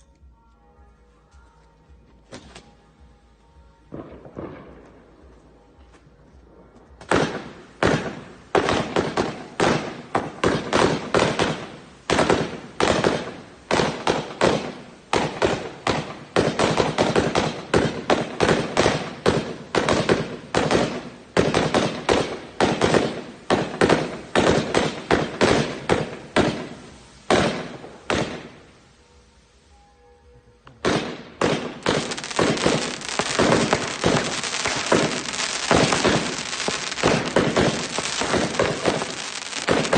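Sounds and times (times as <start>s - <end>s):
fireworks bangs: 6.4s - 28.9s, 30.8s - 39.9s.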